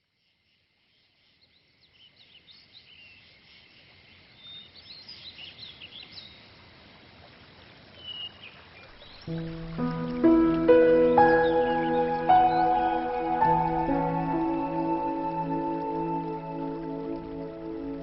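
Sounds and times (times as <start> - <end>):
small birds chirping: 8.0 - 18.0.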